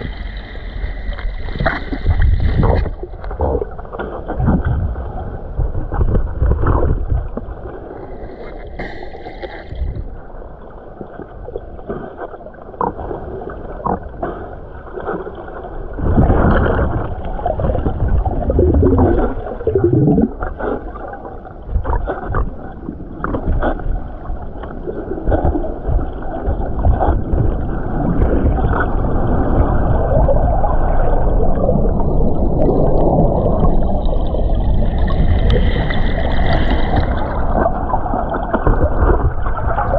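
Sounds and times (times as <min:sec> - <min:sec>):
river water churning and gurgling: 0:14.8 - 0:39.9
knocks and splashes: 0:34.6 - 0:39.9.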